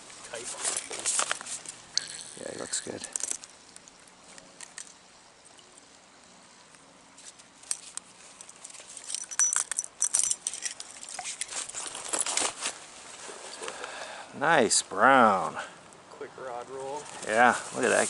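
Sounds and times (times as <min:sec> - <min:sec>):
rustling: 0:00.0 - 0:05.0, 0:05.8 - 0:14.0, 0:16.7 - 0:18.0
sharp light clicks and clinks: 0:01.9 - 0:05.0, 0:07.6 - 0:11.7
metallic jingle: 0:09.0 - 0:11.1.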